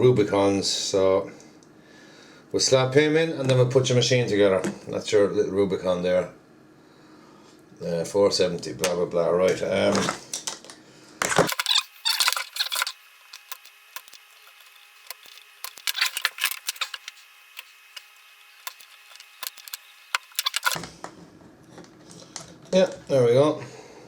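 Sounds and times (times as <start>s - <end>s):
small sharp clicks and crackles: 10.2s - 20.9s
scraping on circuit board: 11.4s - 20.8s.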